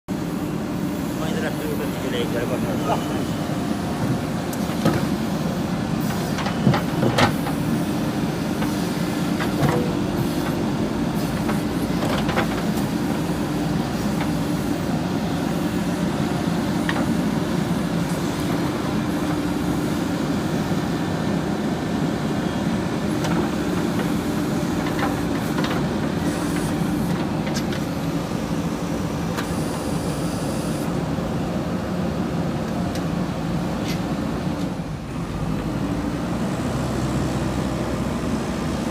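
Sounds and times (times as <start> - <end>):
diesel engine running: 0.1 - 38.9.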